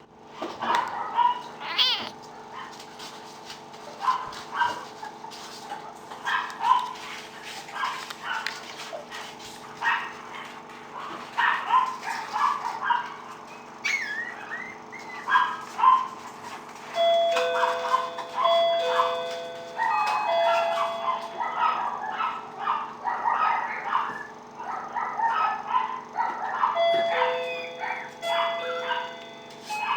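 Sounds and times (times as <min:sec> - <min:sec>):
puppies yipping and barking: 0:00.5 - 0:03.1, 0:03.8 - 0:29.9
puppy whining: 0:00.7 - 0:02.3, 0:13.0 - 0:16.2, 0:25.0 - 0:29.9.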